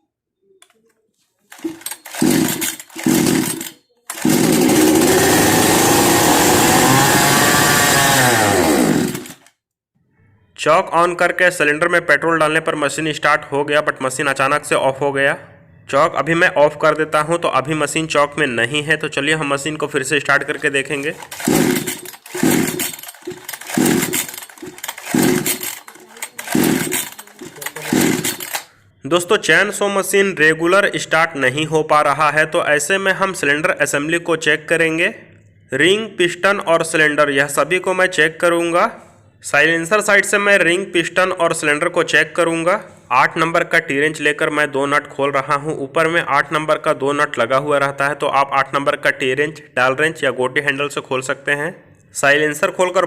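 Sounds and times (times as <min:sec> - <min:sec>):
chainsaw engine running: 0:01.5 - 0:09.5, 0:20.9 - 0:28.7
recoil starter pulls: 0:01.5 - 0:09.5, 0:20.4 - 0:28.7.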